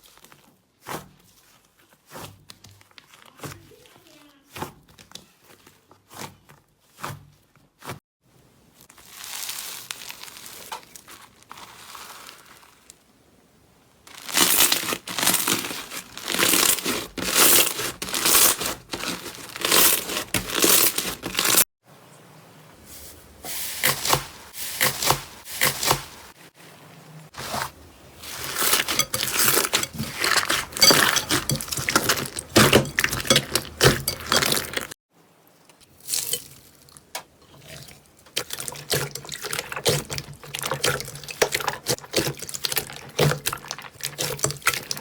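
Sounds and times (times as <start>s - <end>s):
slime crackling and tearing: 9.0s - 13.0s, 14.1s - 21.7s, 28.2s - 34.9s.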